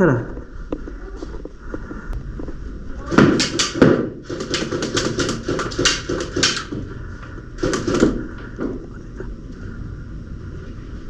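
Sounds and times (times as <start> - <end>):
airsoft gunfire clacks: 3.1 - 6.8, 7.6 - 8.3.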